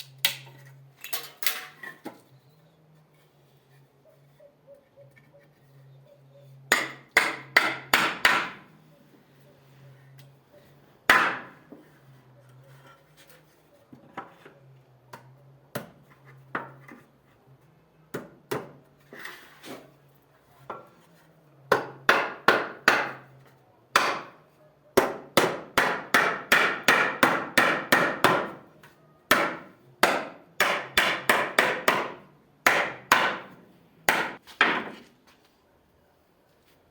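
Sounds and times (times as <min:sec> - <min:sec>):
hammer striking wood: 0:06.7 - 0:08.7, 0:11.1 - 0:11.8, 0:18.1 - 0:18.8, 0:21.7 - 0:23.3, 0:23.9 - 0:24.4, 0:25.0 - 0:28.6, 0:29.3 - 0:35.0.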